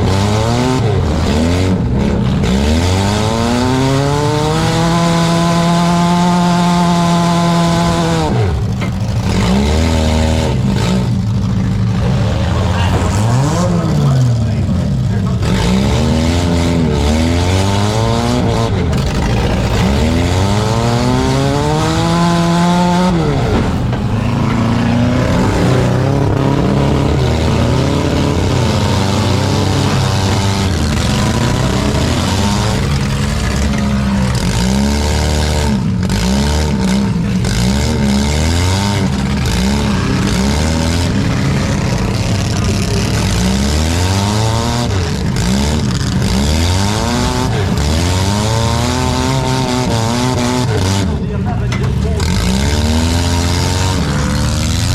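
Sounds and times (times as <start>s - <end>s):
car engines revving: 0.0s - 54.9s
sharp impacts: 17.8s - 54.9s.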